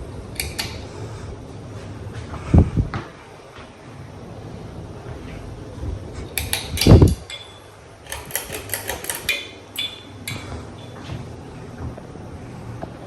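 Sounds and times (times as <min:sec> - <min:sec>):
ceiling fan humming: 0:00.0 - 0:13.0
sharp clicks and knocks: 0:00.4 - 0:00.8, 0:06.4 - 0:11.2.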